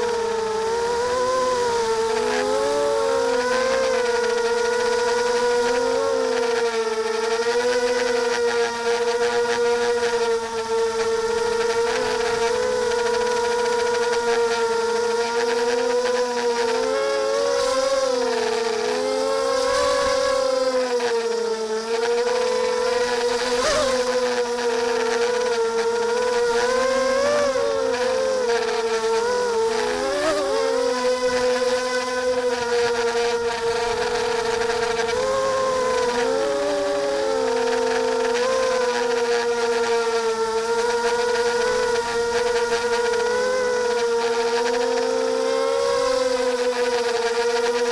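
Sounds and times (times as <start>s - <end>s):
quadcopter propellers whining: 0.0s - 47.9s.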